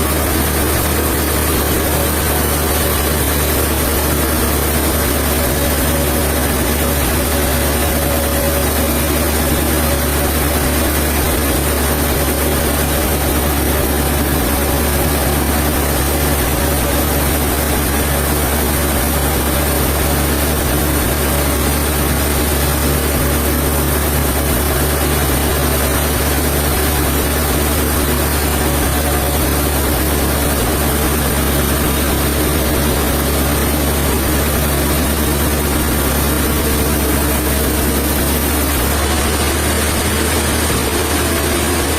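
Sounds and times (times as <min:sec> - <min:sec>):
sawmill machinery humming: 0:00.0 - 0:41.9.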